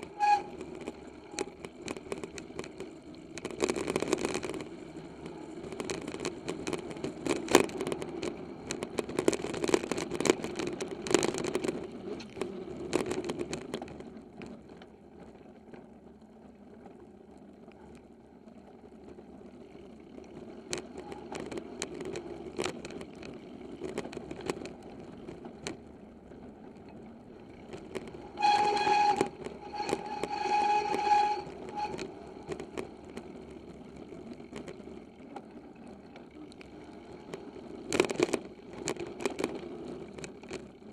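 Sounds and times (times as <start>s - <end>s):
high squeal: 0.0s - 0.6s, 28.3s - 32.6s
mountain bike rattling over trail: 0.0s - 40.9s
tyre noise: 27.6s - 33.0s.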